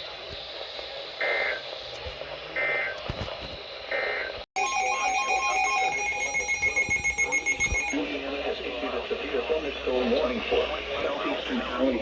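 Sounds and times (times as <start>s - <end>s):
pulsing electronic alert beeps: 4.6s - 8.1s
shrill digital data bursts: 4.6s - 8.2s.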